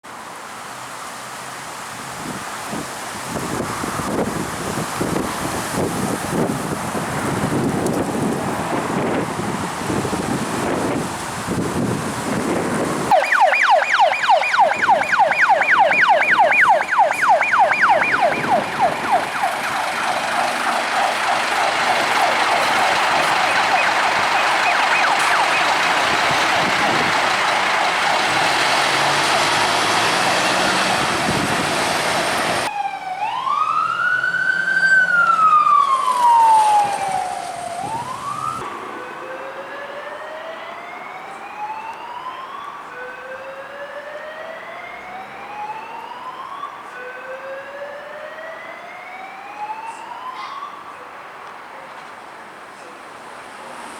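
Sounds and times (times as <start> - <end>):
fire engine siren yelping: 3.3 - 51.1
siren wailing: 13.1 - 51.0.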